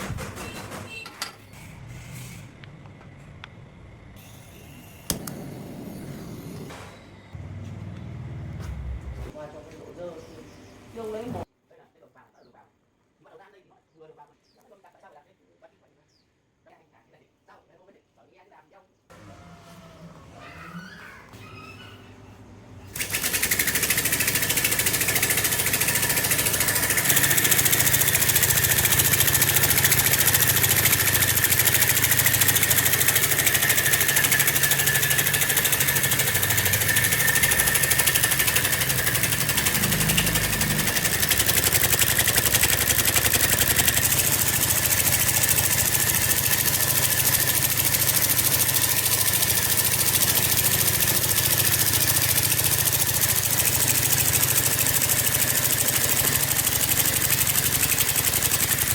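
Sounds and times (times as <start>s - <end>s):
low mechanical hum: 1.4s - 11.5s.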